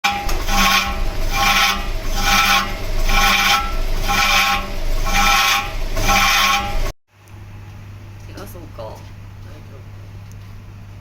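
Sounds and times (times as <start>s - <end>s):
brake scraping rhythmic grind: 0.0s - 6.9s.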